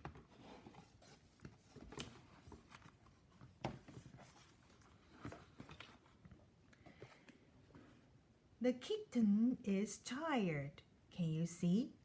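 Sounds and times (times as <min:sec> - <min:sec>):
picture book page rustling: 0:00.0 - 0:08.1.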